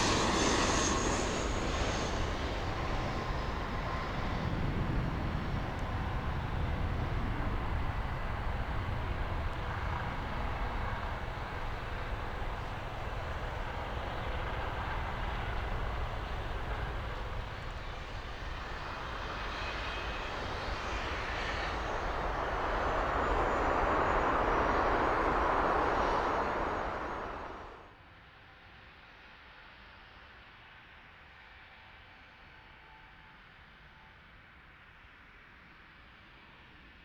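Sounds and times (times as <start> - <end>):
jet engines rushing: 0.0 - 27.9.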